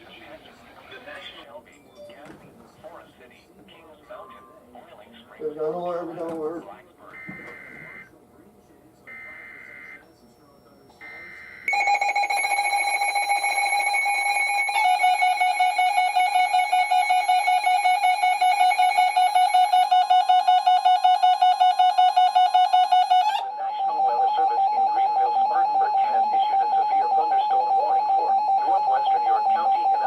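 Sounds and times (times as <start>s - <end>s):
electronic alarm beep pulsing: 11.0s - 30.0s.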